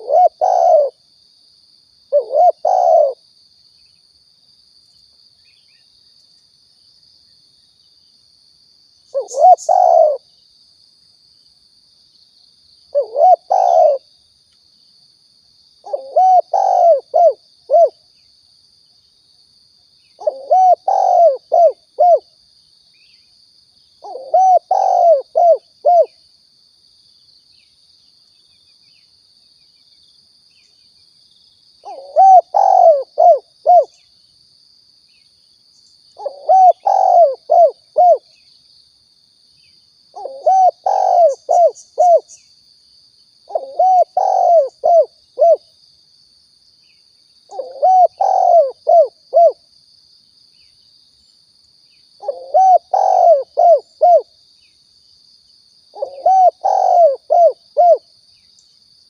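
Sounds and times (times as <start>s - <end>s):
dove cooing: 0.0s - 1.0s, 2.1s - 3.2s, 9.1s - 10.2s, 12.9s - 14.1s, 15.8s - 18.0s, 20.2s - 22.3s, 24.0s - 26.2s, 31.8s - 34.0s, 36.2s - 38.3s, 40.2s - 42.3s, 43.5s - 45.6s, 47.5s - 49.6s, 52.2s - 54.3s, 56.0s - 58.0s.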